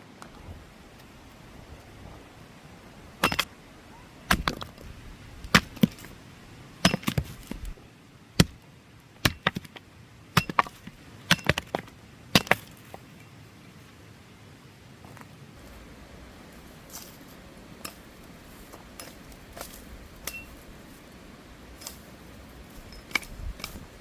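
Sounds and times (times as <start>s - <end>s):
hand axe chopping wood: 4.3s - 4.7s, 5.5s - 6.1s, 6.8s - 7.7s, 9.2s - 9.8s, 10.4s - 12.8s.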